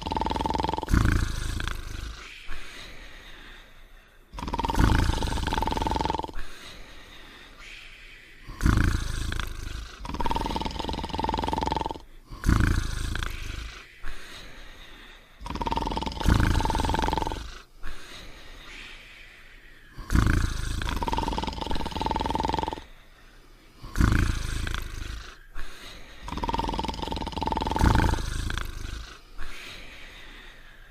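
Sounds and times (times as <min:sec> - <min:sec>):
cartoon snore: 0:00.0 - 0:02.6, 0:04.4 - 0:06.6, 0:08.5 - 0:14.5, 0:15.4 - 0:18.3, 0:20.0 - 0:22.9, 0:23.8 - 0:29.8
steady whistle: 0:07.6 - 0:08.5.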